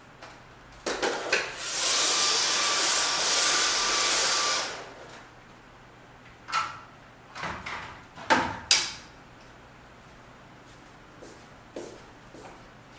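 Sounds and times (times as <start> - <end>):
vacuum cleaner motor whining: 1.2 - 5.3.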